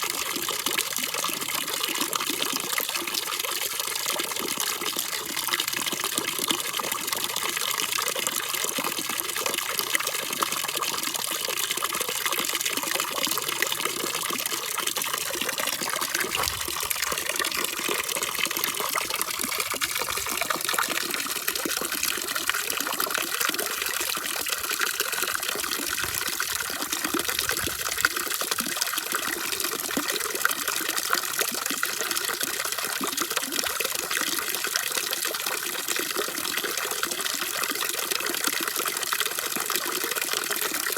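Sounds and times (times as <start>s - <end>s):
running water rushing: 12.7s - 29.2s.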